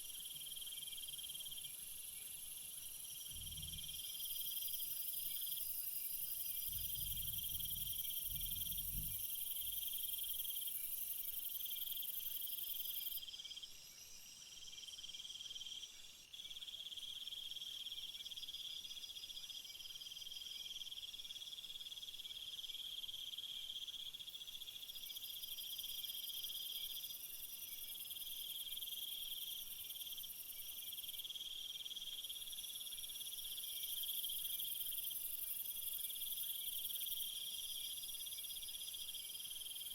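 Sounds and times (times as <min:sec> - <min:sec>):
high shrill insect layer: 0:00.0 - 0:39.9
crickets and insects trilling: 0:00.2 - 0:14.2.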